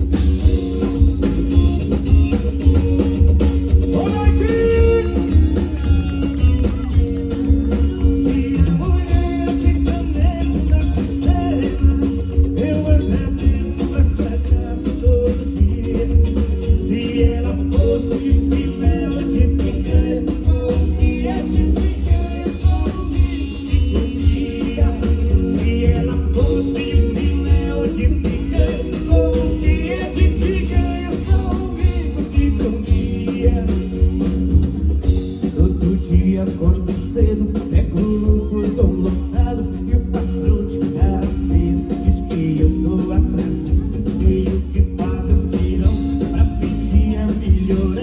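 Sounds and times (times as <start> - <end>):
live band music: 0.0 - 48.0
person singing: 3.8 - 34.5, 35.4 - 48.0.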